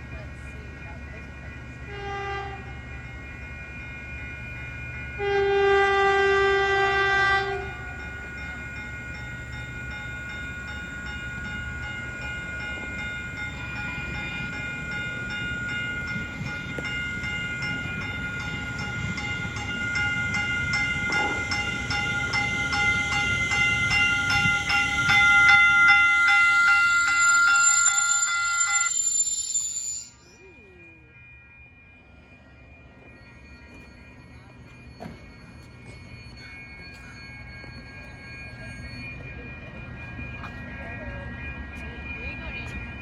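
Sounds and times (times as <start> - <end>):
crossing bell ringing: 0.0 - 43.0
train rumble: 0.0 - 43.0
train horn blast: 1.9 - 2.7, 5.2 - 7.8.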